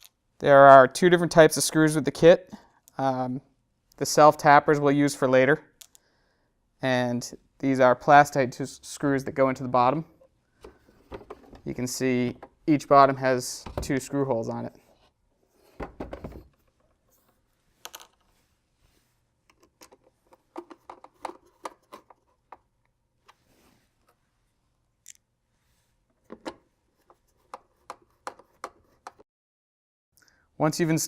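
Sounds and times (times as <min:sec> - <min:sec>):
plastic parts clicking and tapping: 0:19.5 - 0:22.7.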